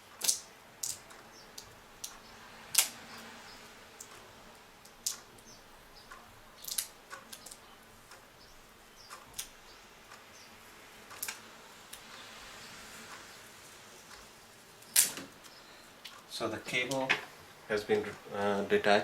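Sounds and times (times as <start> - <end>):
tape peeling clicks and taps: 0.1 - 3.3, 4.8 - 5.5, 6.1 - 8.2.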